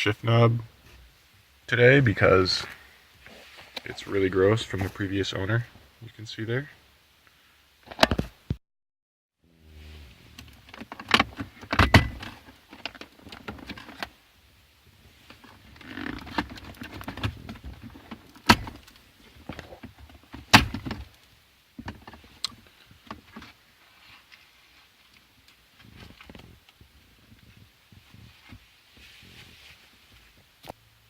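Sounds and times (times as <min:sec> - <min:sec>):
gear shift knob clicks and knocks: 0:10.3 - 0:14.1, 0:15.3 - 0:23.6.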